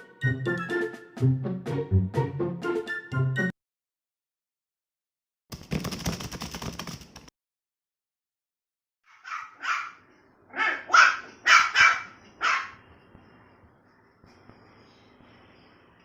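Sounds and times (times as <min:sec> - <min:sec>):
puppy barking: 0:09.1 - 0:12.8.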